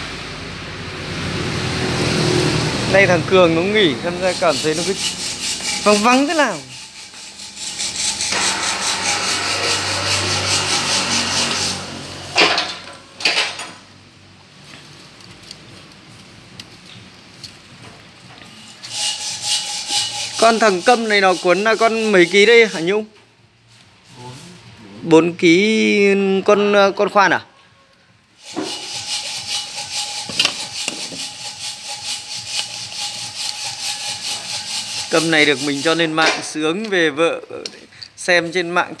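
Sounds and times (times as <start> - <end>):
hand tool rubbing strokes: 2.1 - 13.4, 18.4 - 23.0, 28.4 - 39.0
rhythmic rasping and rattling: 2.8 - 13.8, 18.4 - 22.9, 28.4 - 36.8.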